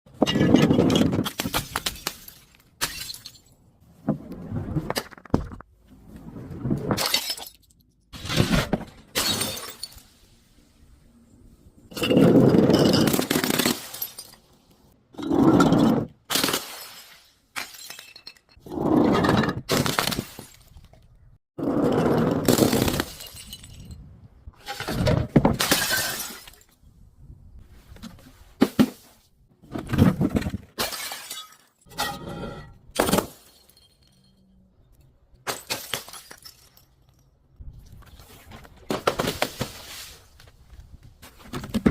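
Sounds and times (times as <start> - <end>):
glass bottles breaking: 1.2 - 3.6, 7.0 - 8.5, 9.1 - 10.1, 16.3 - 18.6, 22.5 - 24.0, 25.6 - 26.7, 30.8 - 32.4, 35.4 - 37.2.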